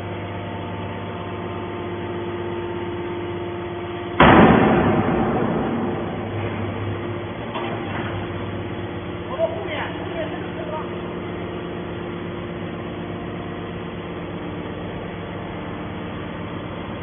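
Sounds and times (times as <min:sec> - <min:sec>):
loud crash: 0:04.2 - 0:07.4.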